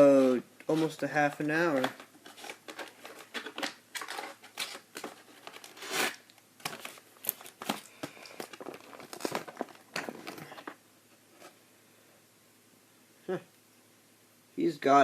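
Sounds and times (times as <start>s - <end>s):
plastic packaging crinkling: 0.7s - 10.8s.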